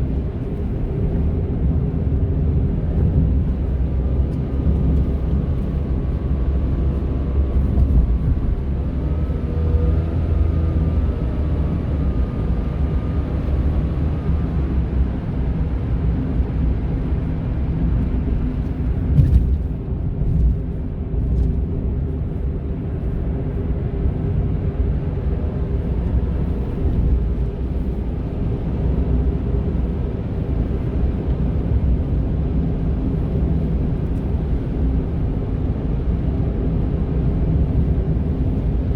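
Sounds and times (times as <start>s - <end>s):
engine and road rumble: 0.0s - 38.9s.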